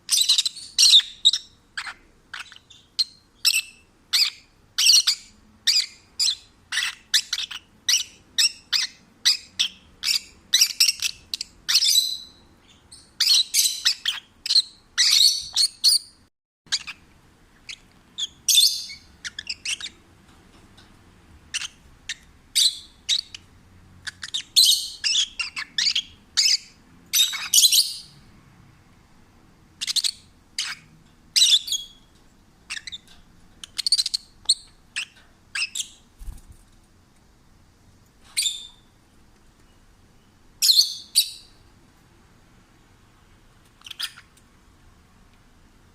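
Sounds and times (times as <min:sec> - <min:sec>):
lovebird chirping: 0:00.1 - 0:17.0, 0:17.6 - 0:20.0, 0:21.5 - 0:28.2, 0:29.8 - 0:36.4, 0:38.3 - 0:39.0, 0:39.7 - 0:41.6, 0:43.8 - 0:44.4.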